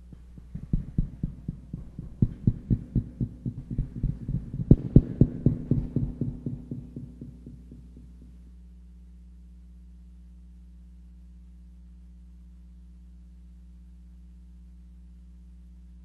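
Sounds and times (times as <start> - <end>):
low drum beats: 0.0 - 8.4
low electrical hum: 0.0 - 16.0.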